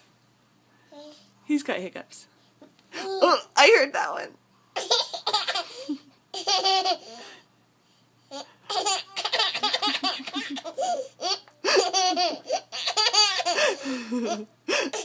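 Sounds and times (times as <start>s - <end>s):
laughter: 9.8s - 10.7s, 13.6s - 14.5s.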